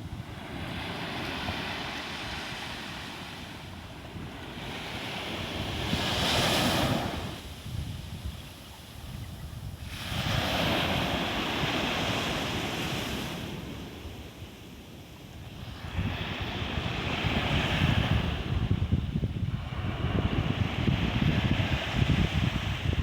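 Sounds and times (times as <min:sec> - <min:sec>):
ocean waves breaking ashore: 0:00.0 - 0:09.1, 0:09.8 - 0:14.8.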